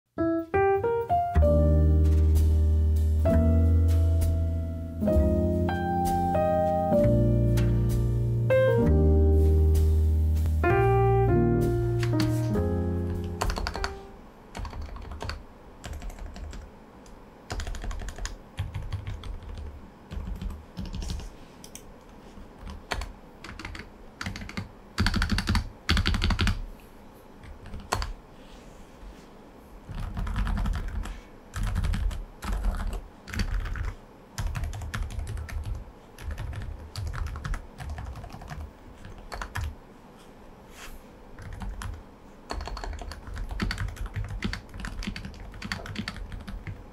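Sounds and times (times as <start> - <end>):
piano tune: 0.1 - 15.3
soft keyboard keystrokes: 12.0 - 14.0, 29.9 - 39.7, 41.4 - 46.8.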